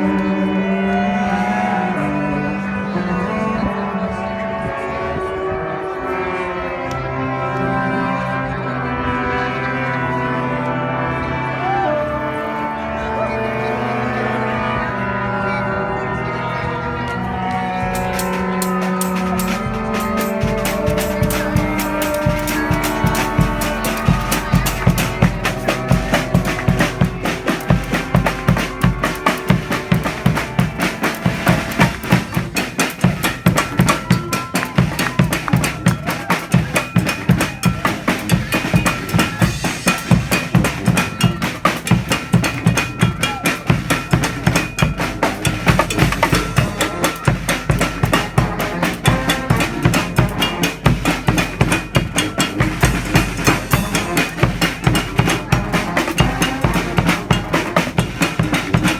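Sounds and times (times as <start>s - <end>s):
faint held instrument notes: 0.0s - 58.9s
marching band drums: 17.4s - 58.9s.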